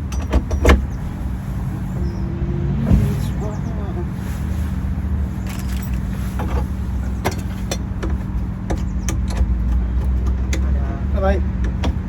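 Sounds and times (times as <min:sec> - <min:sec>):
low engine hum: 0:00.0 - 0:12.0
sharp clicks and knocks: 0:05.5 - 0:10.8, 0:11.6 - 0:12.0.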